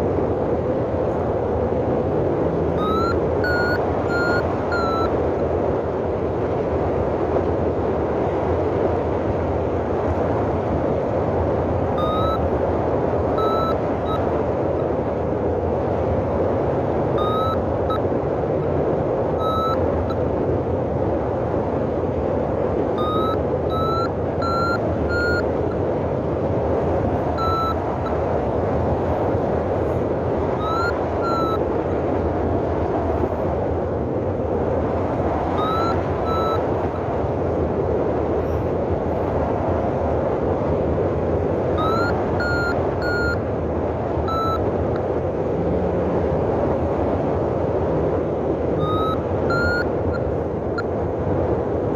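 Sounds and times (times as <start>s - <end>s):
variometer beeping: 2.7s - 5.2s, 11.9s - 14.4s, 17.1s - 18.2s, 19.3s - 20.3s, 22.9s - 25.8s, 27.1s - 28.3s, 30.5s - 31.6s, 35.5s - 37.0s, 41.7s - 43.4s, 44.2s - 45.1s, 48.8s - 50.9s.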